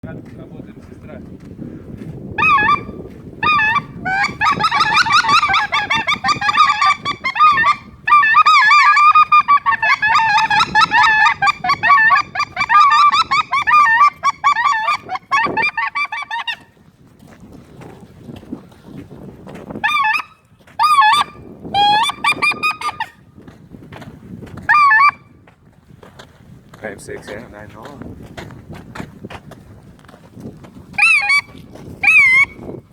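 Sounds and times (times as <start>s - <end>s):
geese honking: 2.4s - 16.7s, 19.8s - 23.2s, 24.7s - 25.2s, 31.0s - 32.6s.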